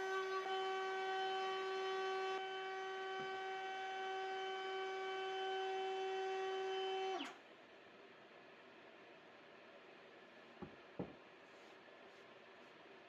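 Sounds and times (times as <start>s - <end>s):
wood router high whine: 0.0s - 7.4s.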